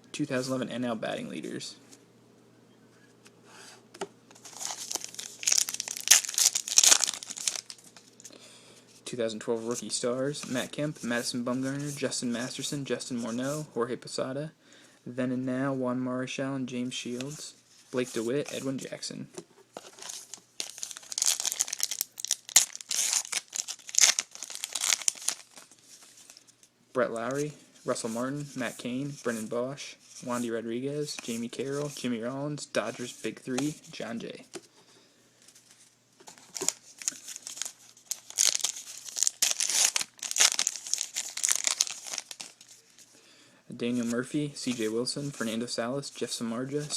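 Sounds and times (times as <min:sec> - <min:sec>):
wrapper tearing and crinkling: 0:04.4 - 0:08.2, 0:19.8 - 0:26.5, 0:36.4 - 0:43.0.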